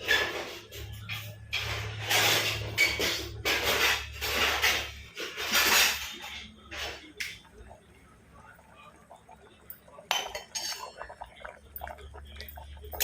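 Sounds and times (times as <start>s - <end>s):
pot and utensils scraping clattering: 0.0s - 7.6s, 10.1s - 13.0s.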